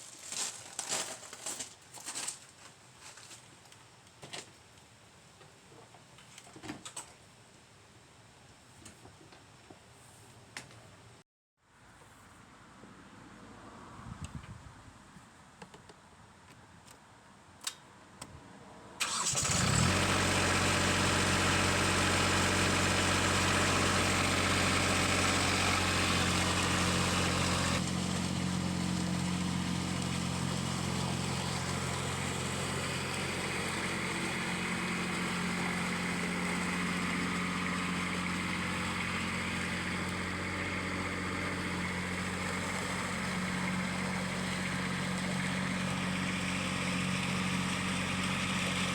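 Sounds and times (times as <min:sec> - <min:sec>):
diesel tractor engine starting: 0:19.0 - 0:48.9.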